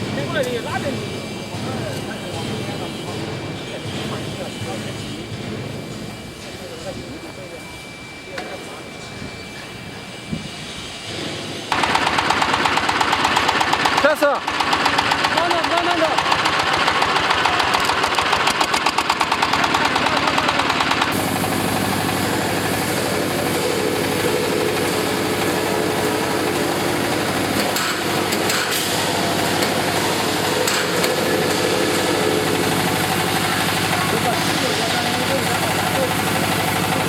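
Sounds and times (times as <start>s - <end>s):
drilling rig engine running: 0.0s - 37.0s.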